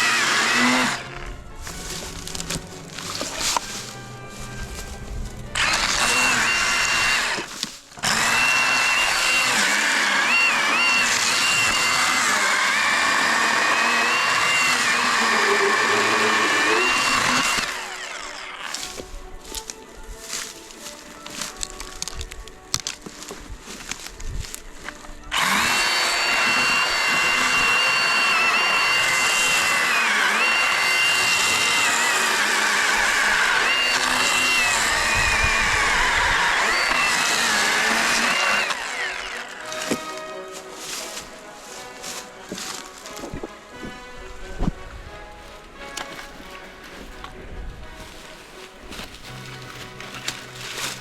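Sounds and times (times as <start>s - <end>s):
chainsaw high whine: 0.0s - 19.0s, 25.2s - 41.2s.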